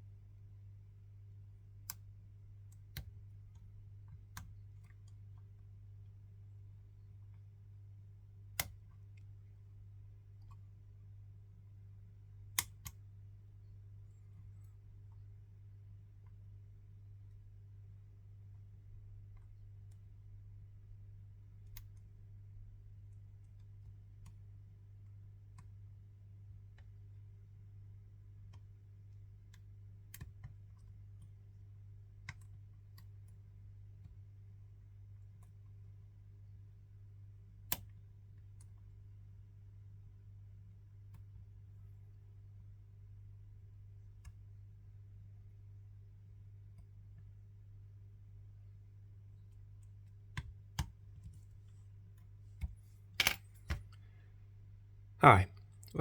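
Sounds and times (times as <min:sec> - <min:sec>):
low electrical hum: 0:00.0 - 0:56.0
lock pick clicking: 0:52.6 - 0:54.0.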